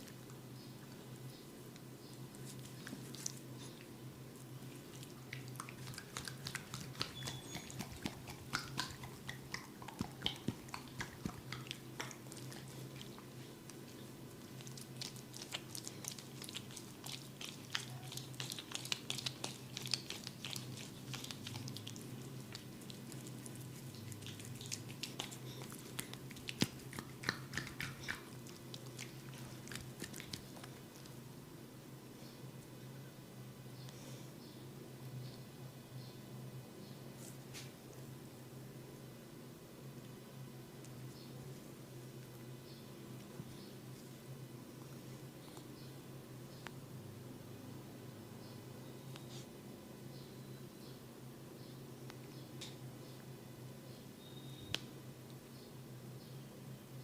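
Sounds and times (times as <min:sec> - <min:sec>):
steady low hum: 0:00.0 - 0:54.2
wet crackling of oily hair: 0:04.4 - 0:31.2.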